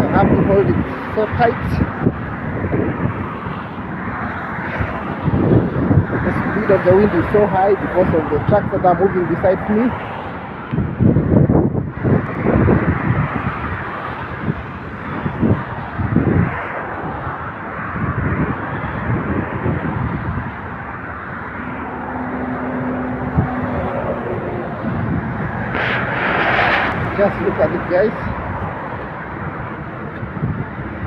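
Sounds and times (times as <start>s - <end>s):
wind buffeting microphone: 0.0s - 31.0s
trucks passing on wet road: 20.8s - 31.0s
engine drone: 20.9s - 30.0s.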